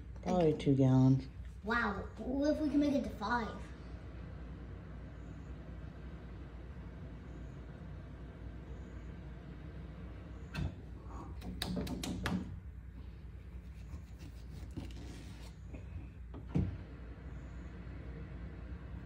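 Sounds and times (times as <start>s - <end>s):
steady low hum: 0.0s - 19.0s
sharp knocks and clicks: 11.4s - 12.6s.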